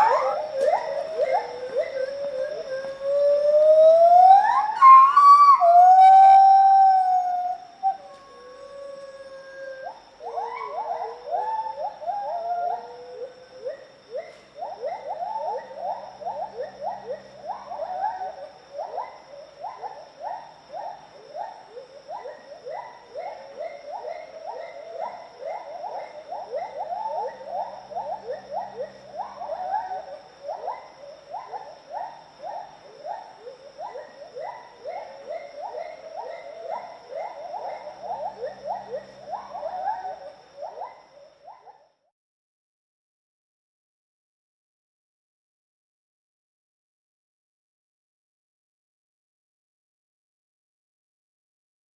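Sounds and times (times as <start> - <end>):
high insect-like drone: 0.0 - 11.6
gibbons whooping: 0.0 - 13.4.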